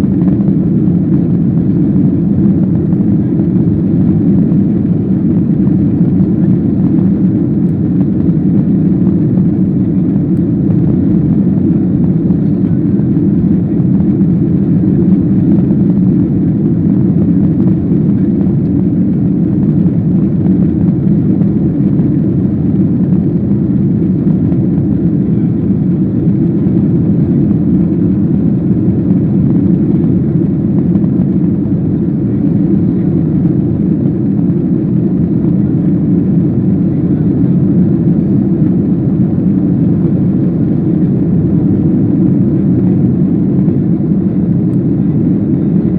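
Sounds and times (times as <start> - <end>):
airplane cabin engine rumble: 0.0 - 45.9.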